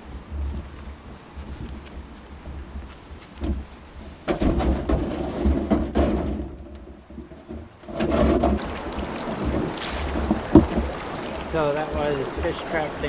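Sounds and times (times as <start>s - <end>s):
wind gusting on microphone: 0.0s - 13.0s
scattered knocks: 4.3s - 8.7s
water rushing over spillway: 7.9s - 13.0s.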